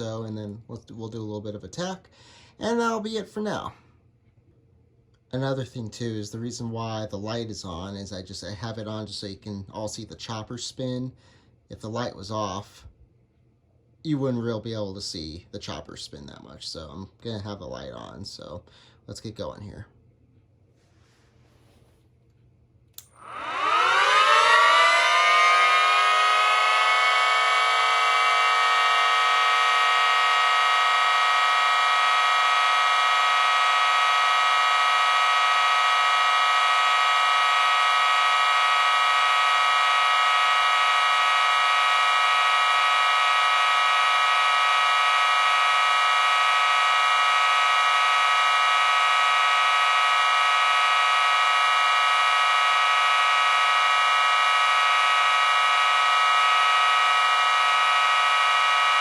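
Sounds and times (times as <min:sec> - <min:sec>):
miniature sirens dense chord: 0:00.0 - 0:03.7, 0:23.0 - 0:59.0.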